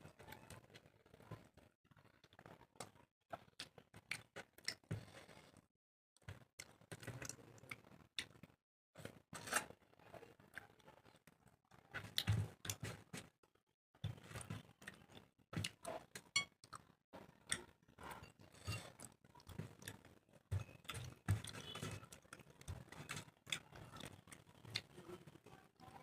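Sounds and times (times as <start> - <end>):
chewing and lip-smacking: 1.4 - 5.2, 14.1 - 25.1.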